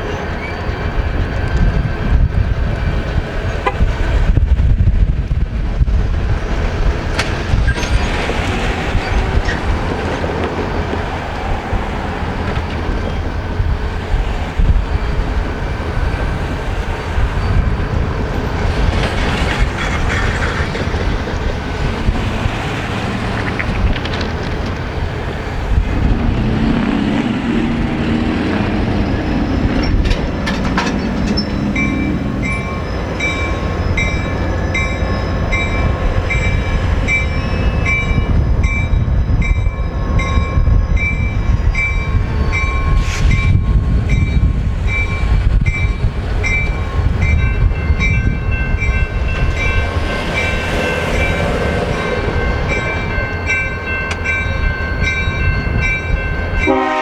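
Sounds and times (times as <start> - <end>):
diesel locomotives rumbling: 0.0 - 57.0
train bell ringing: 26.7 - 57.0.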